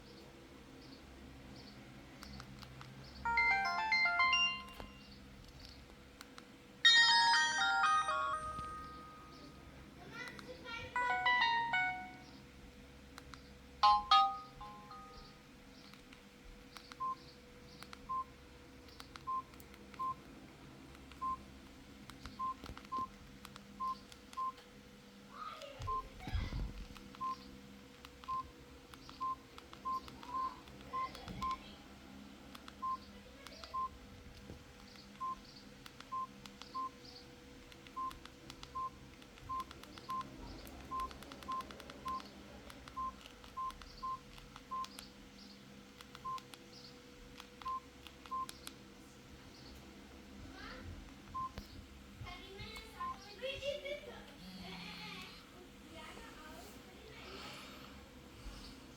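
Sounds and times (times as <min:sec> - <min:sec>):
faint steady hum: 0:00.0 - 0:58.9
phone keypad beeps: 0:03.3 - 0:05.1, 0:06.9 - 0:09.5, 0:11.0 - 0:12.3, 0:13.8 - 0:15.4, 0:17.0 - 0:17.2, 0:18.1 - 0:18.3, 0:19.2 - 0:20.2, 0:21.2 - 0:21.4, 0:22.4 - 0:23.2, 0:23.8 - 0:24.6, 0:25.9 - 0:26.1, 0:27.2 - 0:27.4, 0:28.2 - 0:28.5, 0:29.2 - 0:31.6, 0:32.8 - 0:33.0, 0:33.6 - 0:33.9, 0:35.2 - 0:35.4, 0:36.1 - 0:37.0, 0:37.9 - 0:40.3, 0:40.9 - 0:42.3, 0:42.9 - 0:45.0, 0:46.2 - 0:46.4, 0:47.6 - 0:48.6, 0:51.4 - 0:51.6, 0:53.0 - 0:53.2.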